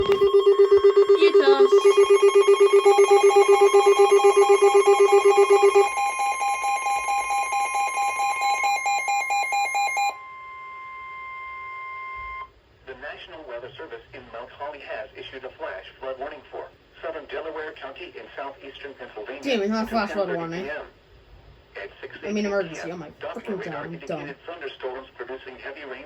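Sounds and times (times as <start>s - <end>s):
higher pulsing beep: 0.0s - 12.5s
low pulsing electronic beep: 0.0s - 12.5s
steady high warning tone: 0.0s - 12.5s.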